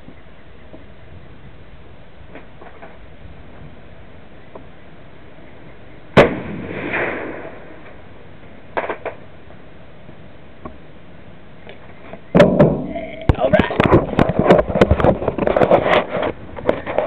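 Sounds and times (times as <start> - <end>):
rifle shot ringing: 6.2 - 7.8.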